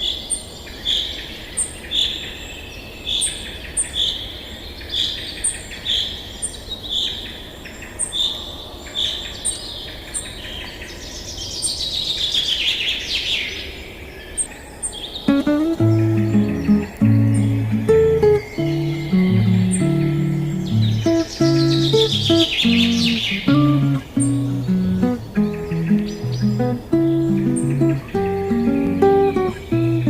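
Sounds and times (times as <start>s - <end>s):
short high bird call: 15.3s - 29.7s
bird notes falling in pitch: 15.3s - 30.0s.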